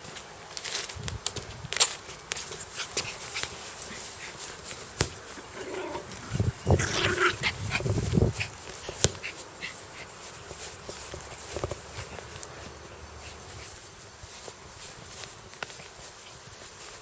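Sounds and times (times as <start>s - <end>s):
dog growling fiercely: 5.4s - 7.9s.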